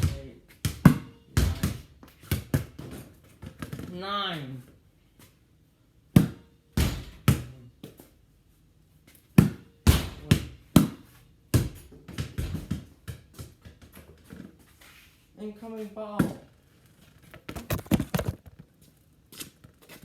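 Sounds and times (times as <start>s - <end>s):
basketball hitting garage door: 0.0s - 4.0s, 6.1s - 8.1s, 9.2s - 14.3s.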